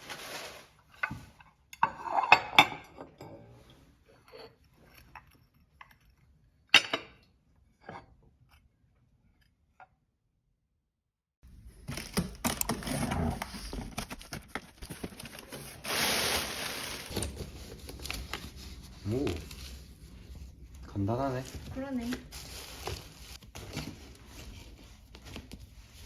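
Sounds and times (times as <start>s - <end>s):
rustling and crackling handling: 11.5s - 26.0s.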